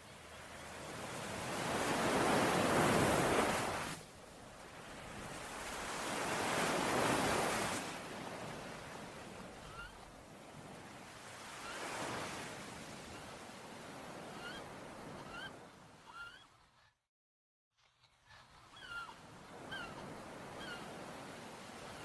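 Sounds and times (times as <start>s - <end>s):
ocean waves washing in: 0.0s - 9.6s.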